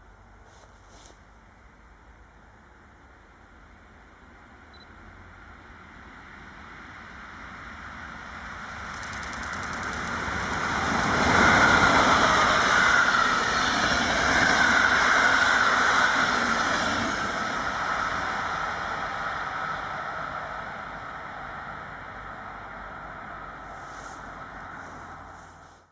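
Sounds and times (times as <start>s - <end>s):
train passing on wet track: 5.2s - 25.9s.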